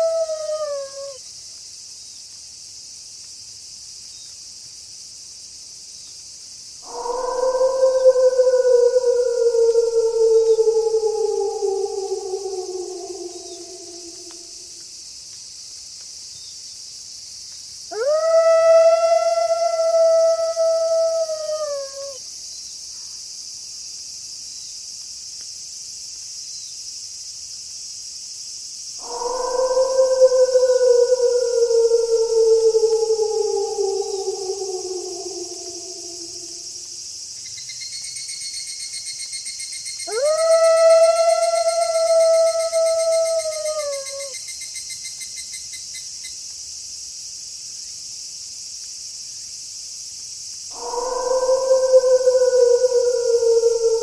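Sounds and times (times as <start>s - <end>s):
wolf howling: 0.0s - 1.2s, 6.8s - 14.8s, 17.9s - 22.2s, 29.0s - 36.9s, 40.1s - 44.4s, 50.7s - 54.0s
crickets chirping: 0.0s - 54.0s.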